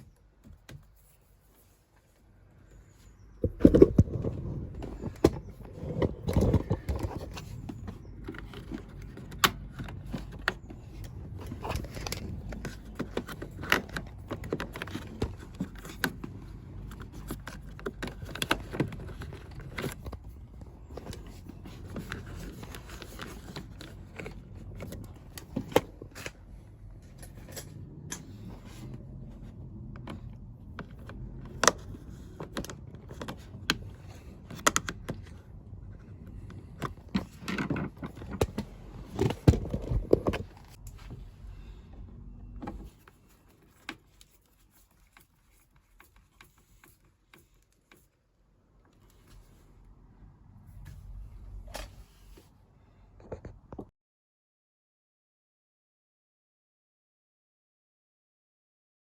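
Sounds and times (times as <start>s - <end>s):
tools and parts clicking and scraping: 2.8s - 41.1s.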